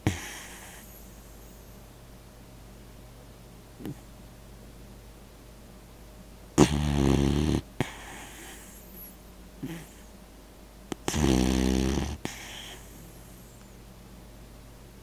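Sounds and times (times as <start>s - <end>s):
pet snoring: 0.0s - 1.6s, 6.6s - 8.8s, 9.6s - 10.0s, 11.0s - 13.6s.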